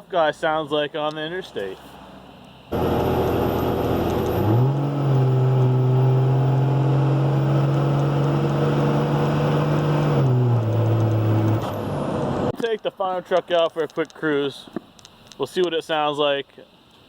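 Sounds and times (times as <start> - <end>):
road noise: 0.0 - 12.6
pickup truck engine drone: 2.1 - 12.5.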